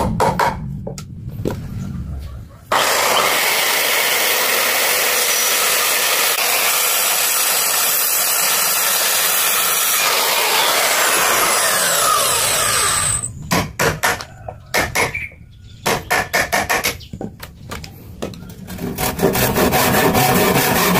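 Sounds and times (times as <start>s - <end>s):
sharp knocks: 0.0s - 1.0s
power tool running on wood: 2.7s - 13.3s.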